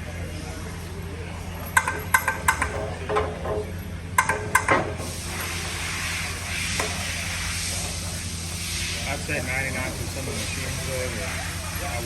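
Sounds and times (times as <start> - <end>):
low machine hum: 0.0 - 12.0
metal clinking against metal: 1.6 - 4.8
steady hiss: 4.2 - 12.0.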